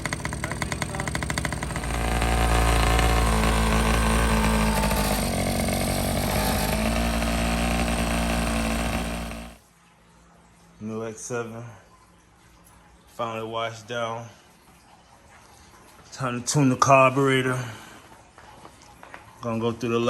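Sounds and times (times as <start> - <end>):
small two-stroke engine running: 0.0 - 9.6.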